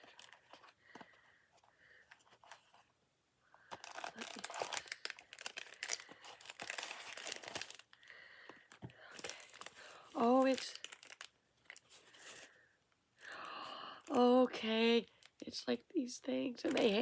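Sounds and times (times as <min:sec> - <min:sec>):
packaging crinkling and tearing: 0:00.0 - 0:00.7, 0:03.7 - 0:08.1, 0:09.1 - 0:12.5, 0:16.6 - 0:17.0.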